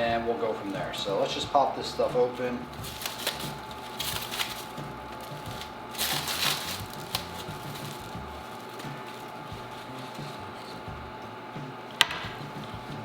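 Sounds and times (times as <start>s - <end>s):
packaging crinkling and tearing: 2.6s - 10.8s.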